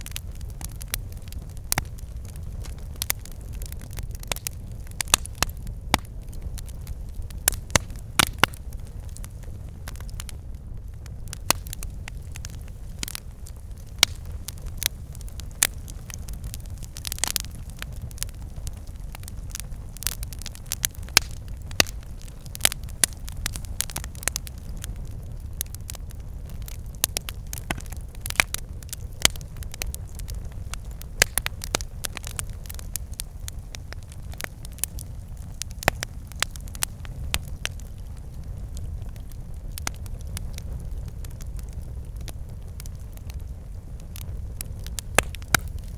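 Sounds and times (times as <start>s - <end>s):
campfire crackling and popping: 0.0s - 45.9s
low rumble of fire: 0.0s - 45.9s.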